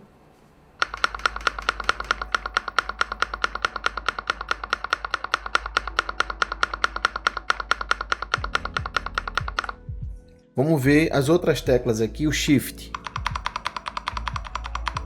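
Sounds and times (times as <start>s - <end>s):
keyboard spacebar clacking: 0.8s - 9.8s, 12.9s - 15.0s.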